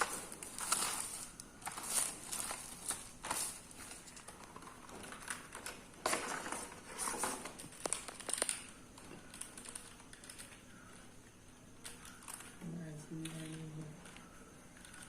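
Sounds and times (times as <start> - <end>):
handling rustles: 0.0 - 8.5.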